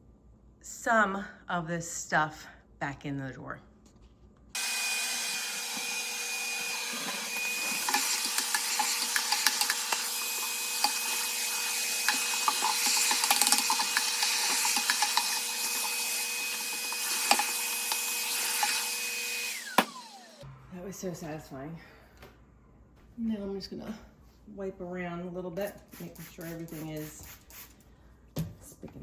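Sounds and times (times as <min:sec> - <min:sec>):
vacuum cleaner whining: 0:04.6 - 0:20.7.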